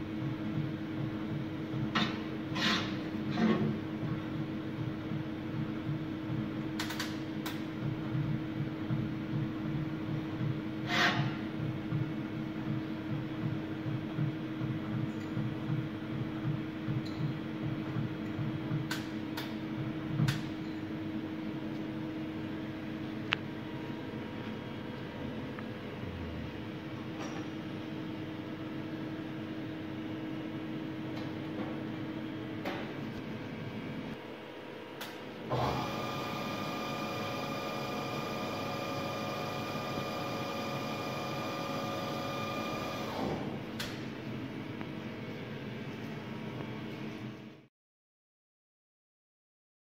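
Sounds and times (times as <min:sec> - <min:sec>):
machine humming with low pulsing: 0:00.0 - 0:47.7
machine spindle whining: 0:35.5 - 0:43.4.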